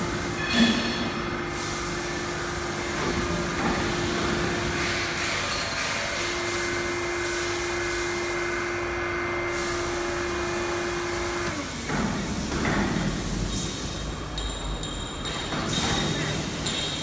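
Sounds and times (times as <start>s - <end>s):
machine motor whine: 0.0s - 12.3s.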